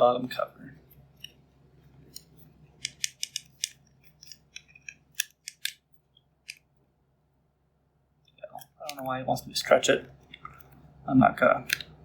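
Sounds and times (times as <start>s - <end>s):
plastic parts clicking: 2.1s - 6.7s.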